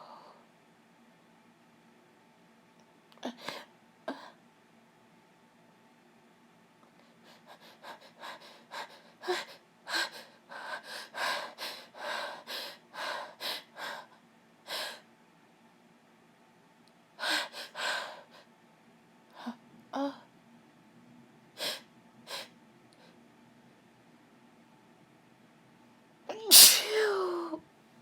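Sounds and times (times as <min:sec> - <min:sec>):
woman sniffing: 0:26.5 - 0:27.2.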